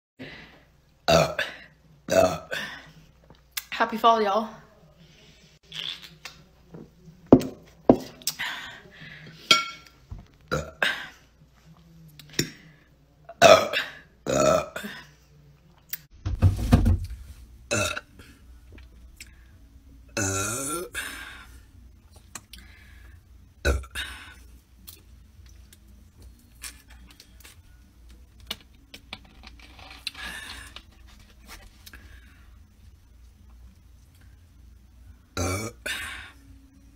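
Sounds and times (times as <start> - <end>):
woman burping: 1.1 - 2.9, 10.5 - 11.2, 13.3 - 15.1, 17.7 - 18.0, 20.2 - 21.3, 23.6 - 24.4, 35.4 - 36.4.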